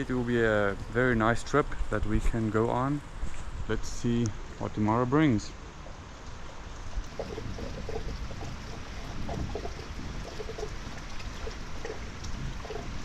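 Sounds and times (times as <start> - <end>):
steady rain falling: 0.0 - 13.0
water trickling and dripping: 4.0 - 13.0.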